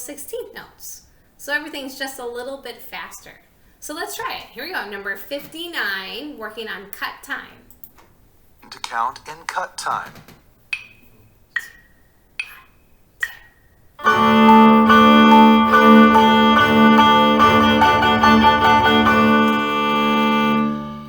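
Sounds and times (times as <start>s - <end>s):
plucked and bowed strings: 14.0s - 21.0s.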